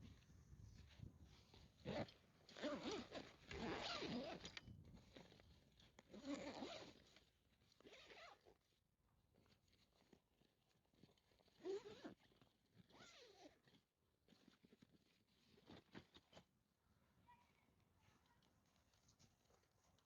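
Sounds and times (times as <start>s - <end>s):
zipper pulled: 0.8s - 8.7s, 9.4s - 16.5s.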